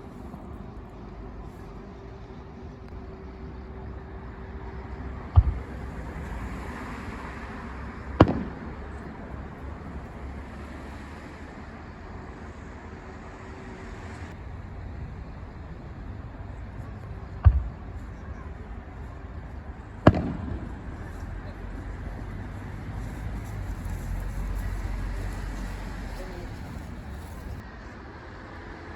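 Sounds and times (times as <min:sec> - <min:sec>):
firework shells booming: 0:08.1 - 0:09.4, 0:20.0 - 0:21.1.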